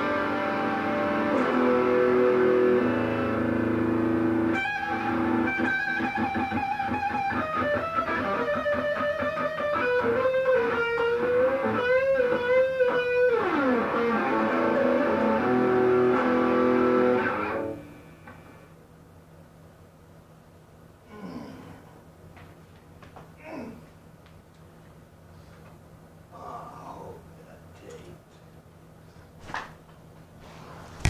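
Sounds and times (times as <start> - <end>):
plucked guitar melody: 0.0 - 17.6.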